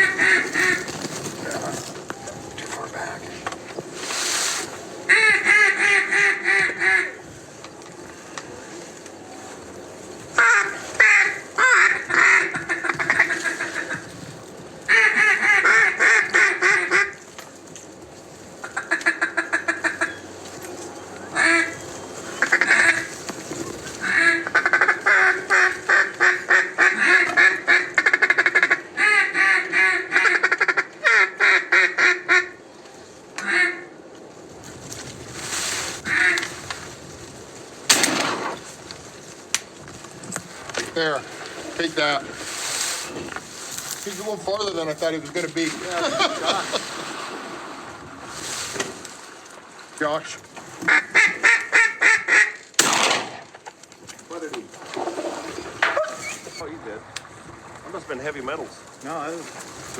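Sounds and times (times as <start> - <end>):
duck call quacking: 0.0 - 0.9, 5.1 - 7.2, 10.4 - 14.1, 14.9 - 17.2, 18.6 - 20.2, 21.3 - 21.8, 22.4 - 23.1, 24.0 - 32.6, 33.4 - 33.9, 36.0 - 36.5, 50.9 - 52.6.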